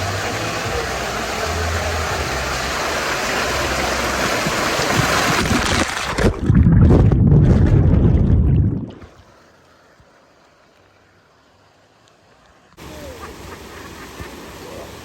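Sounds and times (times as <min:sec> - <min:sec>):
rushing splashing water: 0:00.0 - 0:10.7
muffled underwater rumble: 0:06.2 - 0:09.1.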